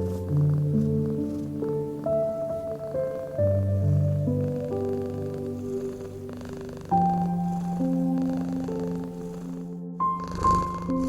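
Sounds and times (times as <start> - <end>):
cat purring: 0.0 - 11.0
slow soft piano music: 0.0 - 11.0.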